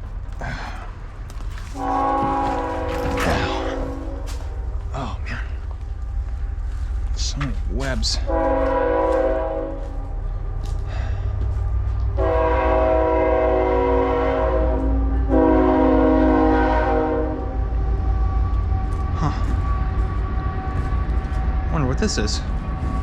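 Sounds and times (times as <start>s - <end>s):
low rumble of passing train: 0.0s - 23.0s
train horn blasts: 1.6s - 5.2s, 8.0s - 10.4s, 12.1s - 21.4s.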